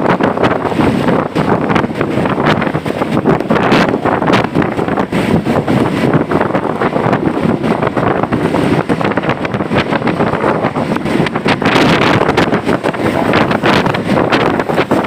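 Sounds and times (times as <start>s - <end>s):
bus road and engine noise: 0.0s - 15.0s
rain: 0.0s - 15.0s
wind buffeting microphone: 0.0s - 15.0s.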